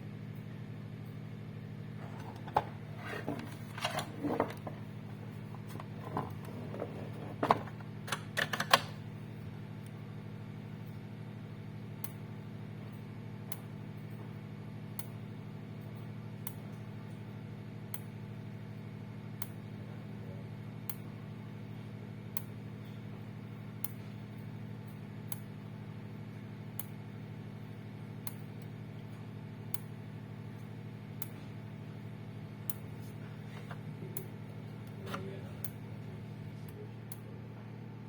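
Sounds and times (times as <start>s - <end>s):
steady low hum: 0.0s - 38.0s
electric fence energizer clicking: 2.0s - 9.1s, 12.0s - 12.3s, 12.9s - 14.2s, 15.0s - 15.2s, 15.8s - 16.8s, 23.8s - 25.6s, 26.7s - 27.0s, 28.2s - 28.8s, 29.7s - 30.0s, 32.6s - 33.1s.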